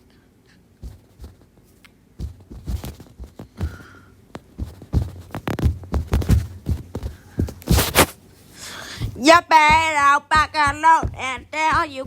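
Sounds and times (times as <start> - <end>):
low thumps: 2.2 - 8.2, 8.9 - 12.0
sharp knocks: 8.9 - 12.0.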